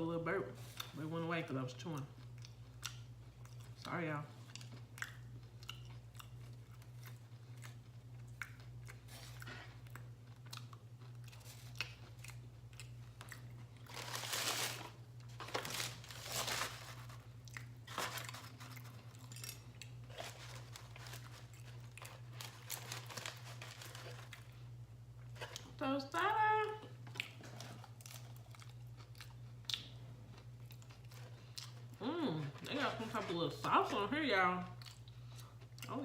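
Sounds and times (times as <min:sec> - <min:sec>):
person chewing and crunching food: 0:01.7 - 0:25.8, 0:26.4 - 0:33.3, 0:34.6 - 0:36.0.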